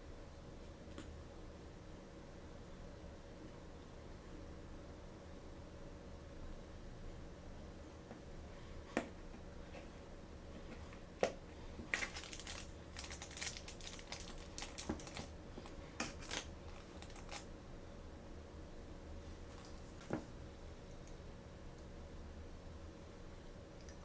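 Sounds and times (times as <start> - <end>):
faint steady hum: 0.0 - 24.0
plastic packaging clicking: 11.9 - 15.3, 16.0 - 17.4.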